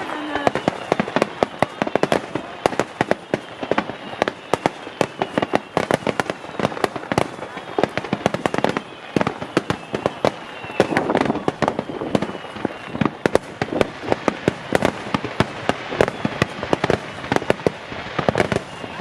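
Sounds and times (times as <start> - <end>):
faint falling whistle: 0.0 - 6.9, 7.5 - 13.2, 18.3 - 19.0
fireworks bursting: 0.0 - 19.0.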